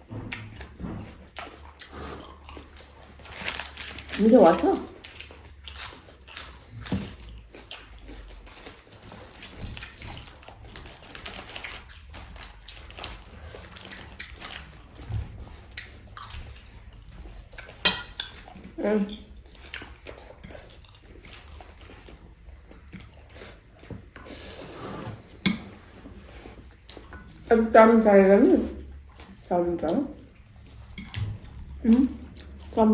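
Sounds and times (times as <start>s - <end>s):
cutlery and dishes clinking: 17.6s - 19.1s.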